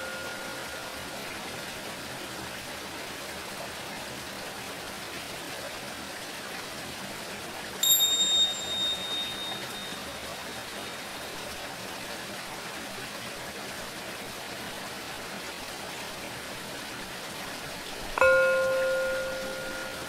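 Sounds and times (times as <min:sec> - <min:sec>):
tingsha cymbals ringing: 0:00.0 - 0:01.8, 0:07.8 - 0:11.6, 0:18.2 - 0:20.0
running water: 0:00.0 - 0:20.0.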